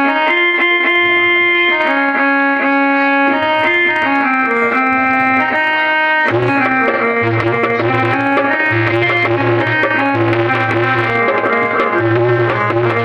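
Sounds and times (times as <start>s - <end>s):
keyboard melody of held notes: 0.0s - 13.0s.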